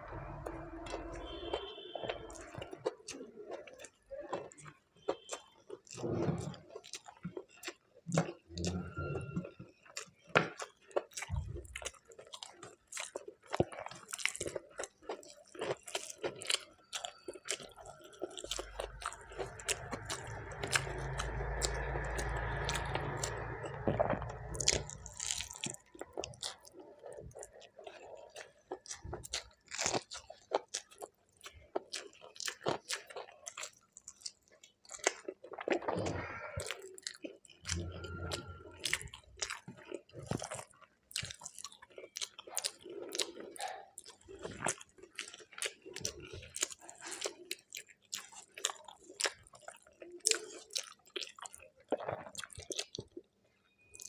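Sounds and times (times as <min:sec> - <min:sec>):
person chewing food: 0:00.0 - 0:54.0
rushing noise with low rumble: 0:19.7 - 0:25.0.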